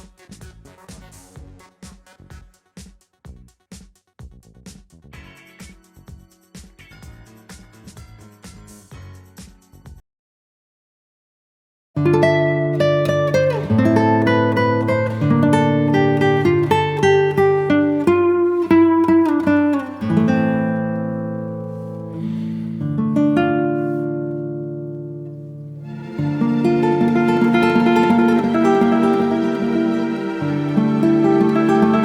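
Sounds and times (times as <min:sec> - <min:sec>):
acoustic guitar playing: 0:12.0 - 0:32.0.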